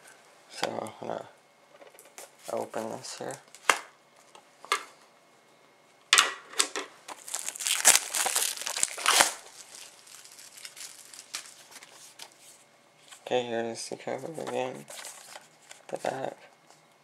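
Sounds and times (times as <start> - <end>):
plastic wrap tearing and crackling: 7.1 - 12.4
plastic wrap rustling: 7.1 - 13.3.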